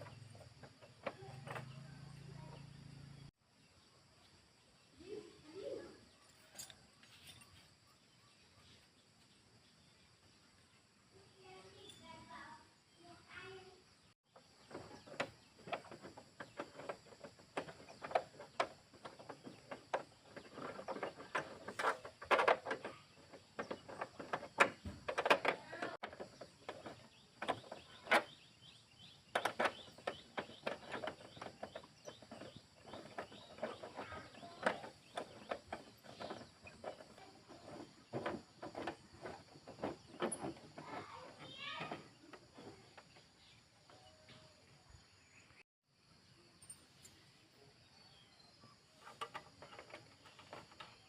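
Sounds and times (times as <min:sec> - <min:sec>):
tools clicking and knocking: 0:14.7 - 0:28.3, 0:29.3 - 0:43.1, 0:49.0 - 0:51.0.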